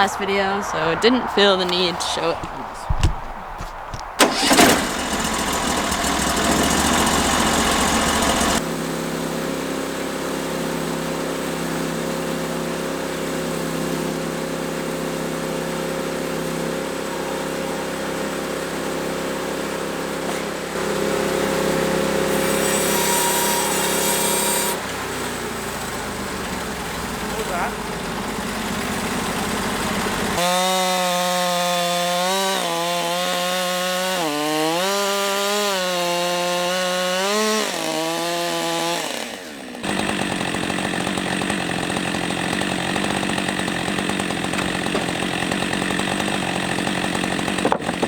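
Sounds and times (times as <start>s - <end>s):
gasoline engine running: 0.0s - 22.7s, 23.5s - 30.5s, 39.4s - 48.0s
sharp knock: 2.9s - 4.1s.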